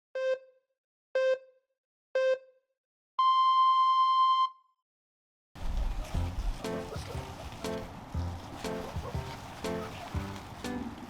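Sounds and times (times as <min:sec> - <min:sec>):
electronic countdown beeps: 0:00.2 - 0:00.6, 0:01.2 - 0:01.6, 0:02.2 - 0:02.6, 0:03.2 - 0:04.6.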